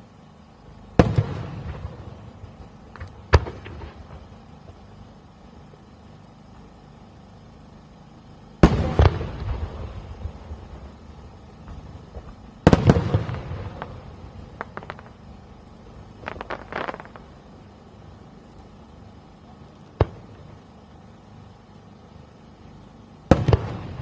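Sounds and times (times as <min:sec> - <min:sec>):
fireworks crackling pops: 0:00.0 - 0:06.7, 0:08.5 - 0:24.0
fireworks booming: 0:00.9 - 0:05.0, 0:08.5 - 0:21.2, 0:21.8 - 0:24.0.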